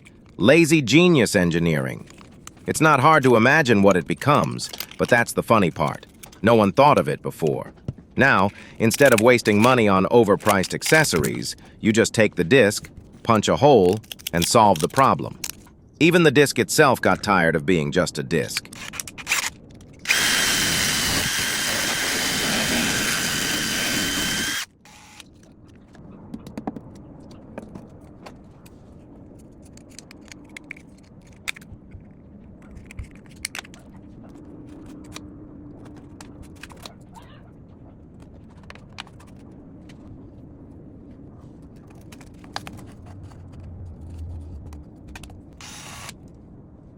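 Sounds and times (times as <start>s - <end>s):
angle grinder whining: 20.1s - 25.2s, 45.6s - 46.1s.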